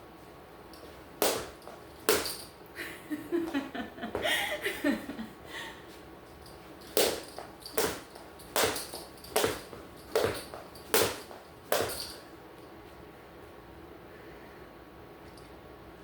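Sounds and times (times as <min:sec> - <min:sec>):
jump rope thuds on floor: 0:01.2 - 0:02.5, 0:06.8 - 0:12.3.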